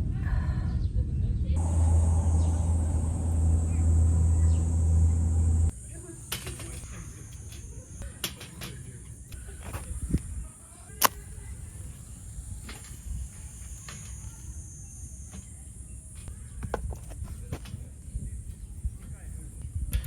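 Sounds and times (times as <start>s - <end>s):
low rumble: 1.6s - 5.7s.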